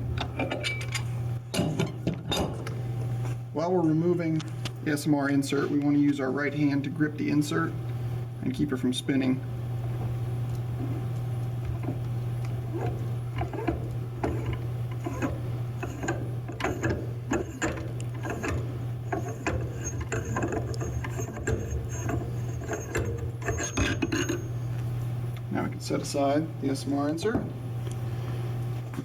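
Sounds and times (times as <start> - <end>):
steady low hum: 0.0 - 29.0
wrench clicking and scraping metal: 12.8 - 24.5.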